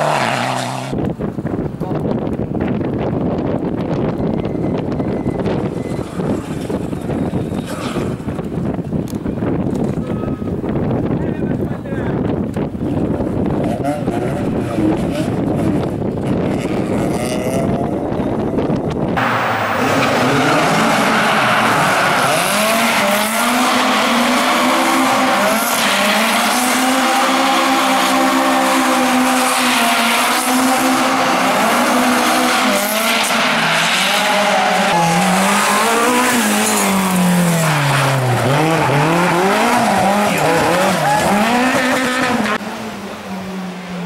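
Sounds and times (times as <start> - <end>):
rally car engine revving: 0.0 - 1.2, 11.5 - 44.0.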